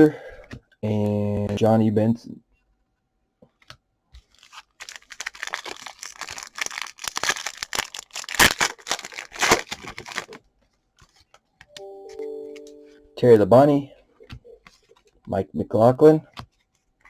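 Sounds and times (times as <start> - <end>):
wrapper tearing and crinkling: 4.3 - 10.4.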